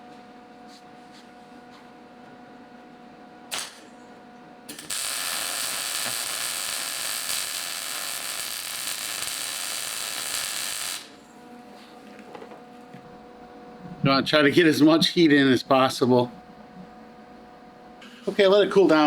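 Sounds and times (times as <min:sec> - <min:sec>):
gas torch flame hissing: 0:04.7 - 0:11.2.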